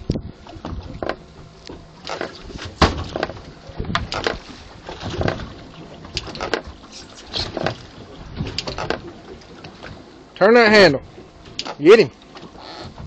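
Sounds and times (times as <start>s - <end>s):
water sloshing against hull: 0.0s - 13.0s
knocks and clatter on board: 2.0s - 10.0s.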